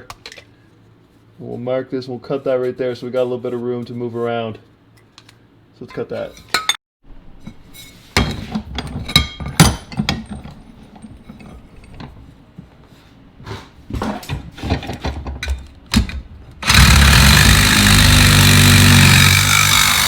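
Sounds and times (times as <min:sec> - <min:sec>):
power tool cutting metal pipe: 0:16.6 - 0:20.0.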